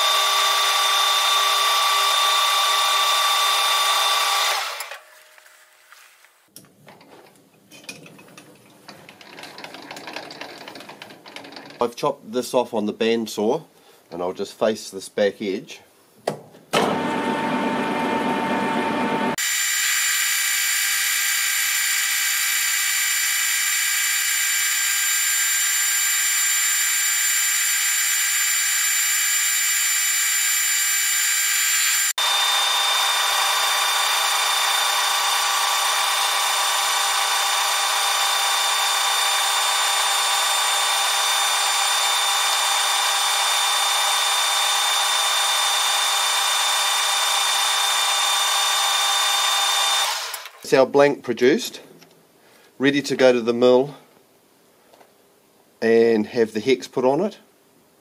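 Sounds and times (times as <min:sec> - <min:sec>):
metal lathe whining: 0:00.0 - 0:05.2, 0:08.9 - 0:11.9, 0:16.8 - 0:50.7.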